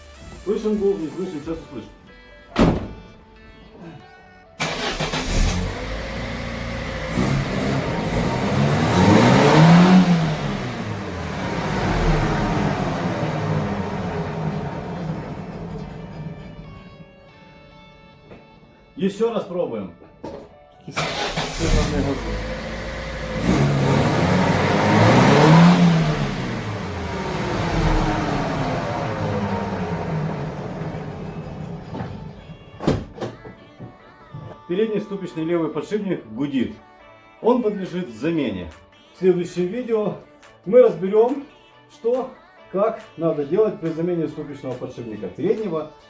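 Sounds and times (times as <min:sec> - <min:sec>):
car engine revving: 0:04.6 - 0:17.1, 0:21.0 - 0:32.9
wheel bearing hum: 0:05.4 - 0:17.1, 0:21.6 - 0:32.9.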